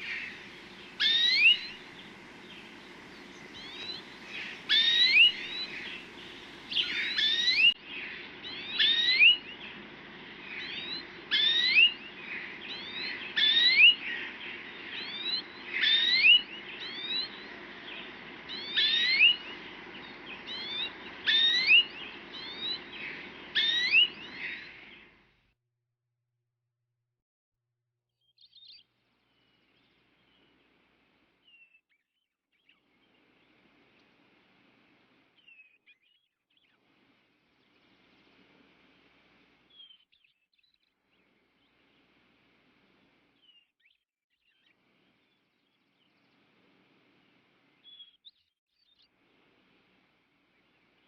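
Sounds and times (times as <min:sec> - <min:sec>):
bird whistling calls: 0:00.0 - 0:07.8, 0:10.6 - 0:12.0, 0:15.0 - 0:24.6
faint steady hum: 0:00.0 - 0:25.5, 0:36.8 - 0:39.7, 0:41.2 - 0:43.4, 0:46.0 - 0:47.8, 0:49.2 - 0:51.0.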